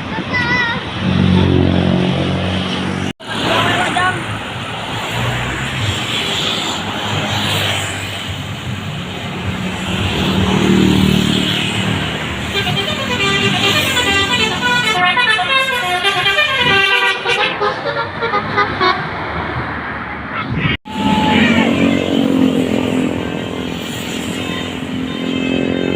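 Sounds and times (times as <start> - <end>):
bus musical horn: 12.4 - 19.2, 21.2 - 25.9.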